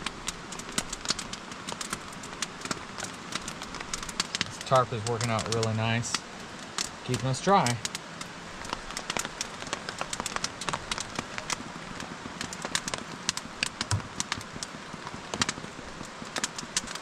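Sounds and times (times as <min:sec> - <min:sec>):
hiss of falling rain: 0:00.0 - 0:17.0
rain drops ticking on a tarp: 0:00.0 - 0:17.0.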